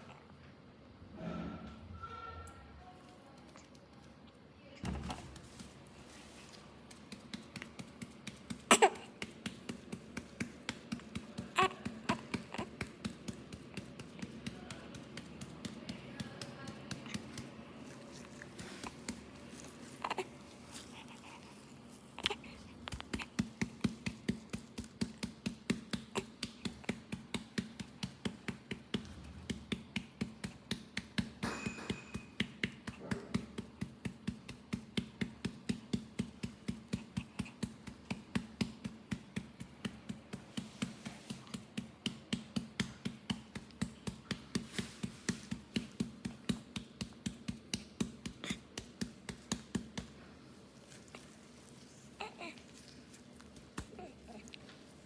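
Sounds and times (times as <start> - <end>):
hand patting a back: 6.8 - 17.8.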